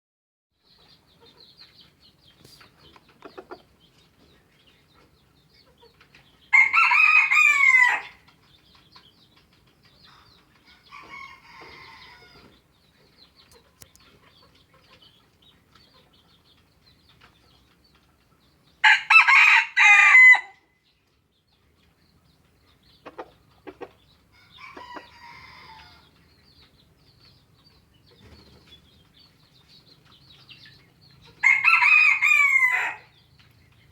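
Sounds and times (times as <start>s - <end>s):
faint rooster crowing: 6.5s - 8.2s, 10.7s - 12.6s, 18.8s - 20.6s, 24.3s - 26.1s, 31.4s - 33.2s
rooster crowing loudly: 6.5s - 8.2s, 10.9s - 12.4s, 18.8s - 20.6s, 24.6s - 26.0s, 31.4s - 33.1s.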